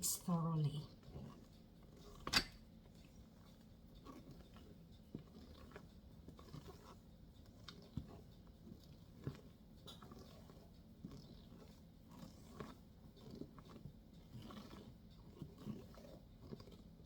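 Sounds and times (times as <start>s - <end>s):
spatula scraping bowl: 4.0s - 7.0s.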